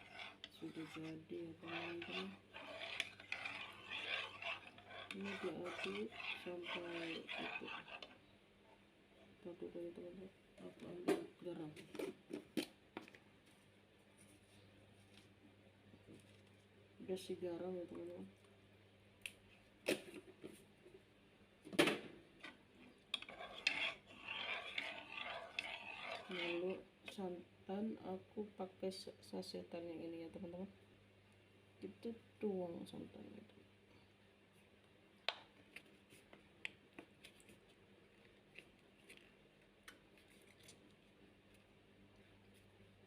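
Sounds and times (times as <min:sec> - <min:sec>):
spoon scraping bowl: 0:00.0 - 0:08.3, 0:22.4 - 0:26.8.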